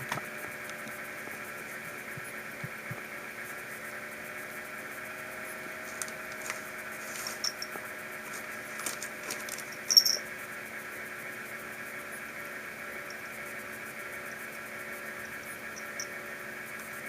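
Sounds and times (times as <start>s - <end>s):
steady background hum: 0.0s - 17.0s
cat collar bell jingling: 7.2s - 7.8s, 9.4s - 10.3s, 15.8s - 16.1s.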